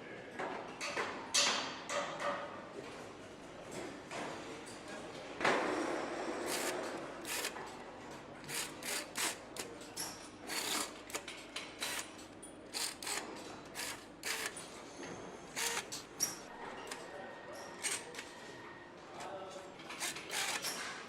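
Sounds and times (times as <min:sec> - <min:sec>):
workshop background hiss: 0:05.4 - 0:07.6, 0:08.3 - 0:16.5.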